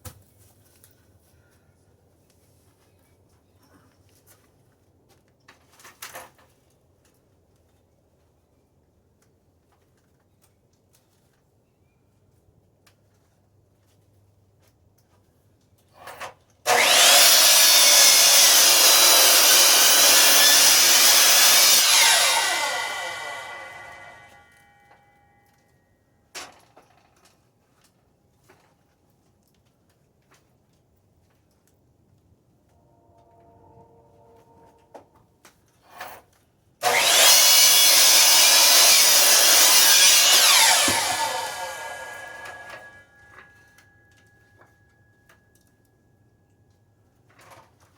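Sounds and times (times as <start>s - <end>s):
miter saw cutting wood: 16.7s - 24.5s, 36.8s - 43.1s
saw motor whining down: 16.7s - 24.5s, 36.8s - 43.2s.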